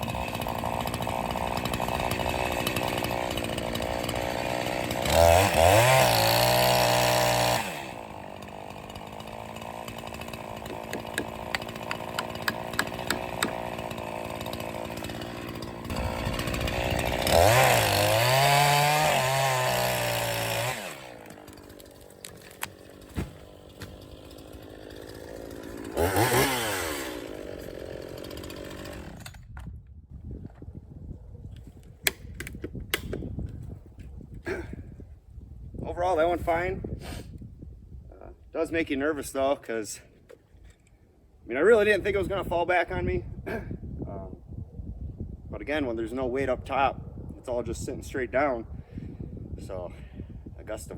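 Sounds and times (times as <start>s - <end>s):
chainsaw revving and idling: 0.0s - 29.4s.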